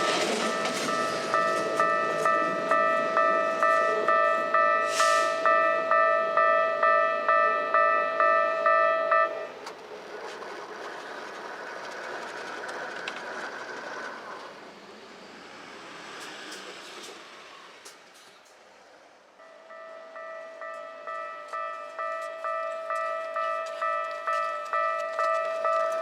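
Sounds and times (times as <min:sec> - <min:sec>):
level crossing bell dinging: 0:00.4 - 0:09.5.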